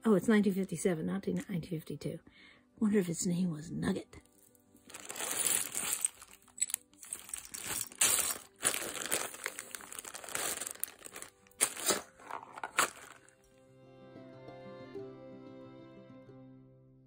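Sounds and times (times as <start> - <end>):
plastic bag crinkling: 4.8 - 13.4.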